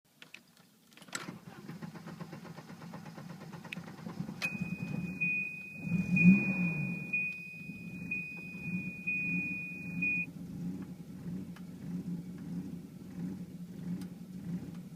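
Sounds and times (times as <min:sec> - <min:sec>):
car engine rough idle: 0:01.4 - 0:14.9
steady high beep: 0:04.4 - 0:10.3.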